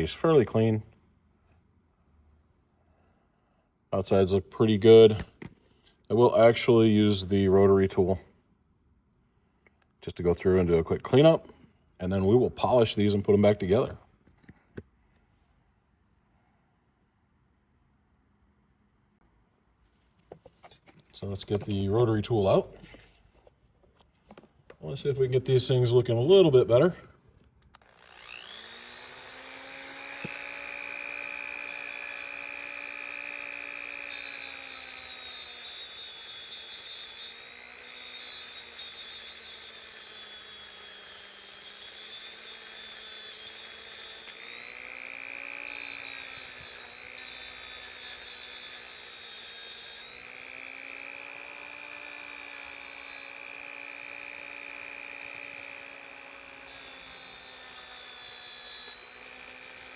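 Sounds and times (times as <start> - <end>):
rotary tool whining on steel: 27.7 - 59.9.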